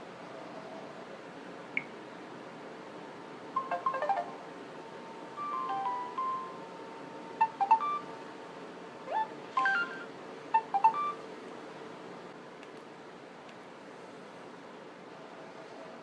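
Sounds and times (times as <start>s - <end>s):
electronic message alert tones: 3.6s - 4.4s, 5.4s - 6.5s, 7.4s - 8.0s, 9.1s - 10.0s, 10.6s - 11.2s.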